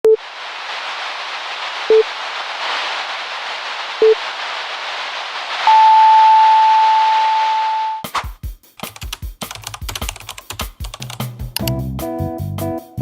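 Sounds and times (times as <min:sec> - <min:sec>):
static hiss: 0:00.1 - 0:07.9
long high steady tone: 0:05.6 - 0:08.0.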